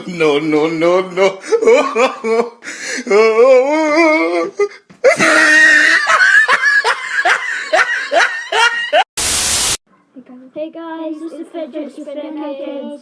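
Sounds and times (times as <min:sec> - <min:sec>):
person laughing hard: 0:05.0 - 0:09.0.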